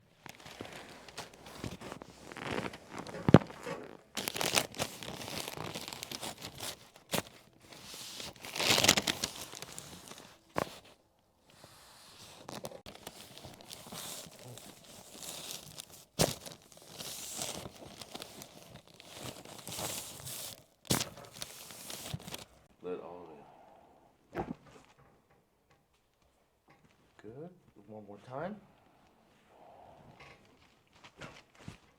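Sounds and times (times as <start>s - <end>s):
paper table cover crinkling: 0.1s - 22.6s.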